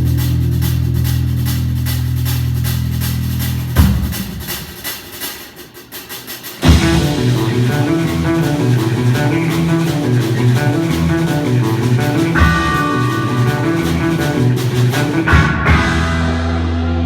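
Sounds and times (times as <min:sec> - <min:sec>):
band playing rock music: 0:06.5 - 0:17.0.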